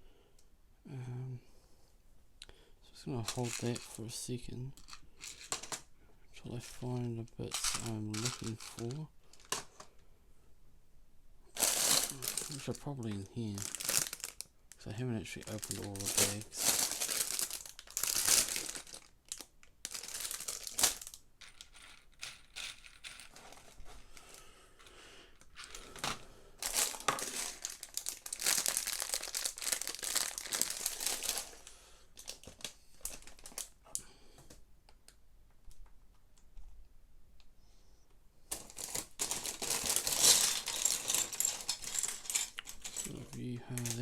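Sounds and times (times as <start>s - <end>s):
plastic bags crinkling: 3.2s - 4.0s, 4.8s - 5.9s, 6.6s - 9.9s, 11.5s - 24.5s, 25.4s - 34.0s, 38.5s - 44.0s
plastic pieces clicking and rattling: 4.8s - 5.8s, 7.5s - 9.9s, 15.4s - 23.8s, 25.4s - 31.6s, 38.5s - 44.0s.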